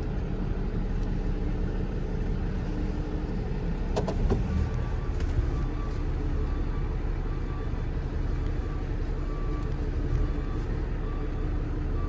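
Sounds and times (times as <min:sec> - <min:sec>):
truck engine running: 0:00.0 - 0:12.0.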